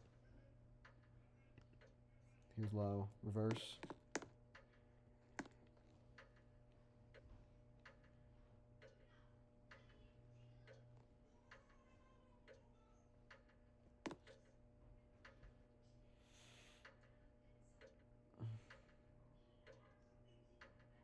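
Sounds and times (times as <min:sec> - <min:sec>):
ceiling fan motor hum: 0:00.0 - 0:21.0
fan ticking: 0:02.6 - 0:11.7.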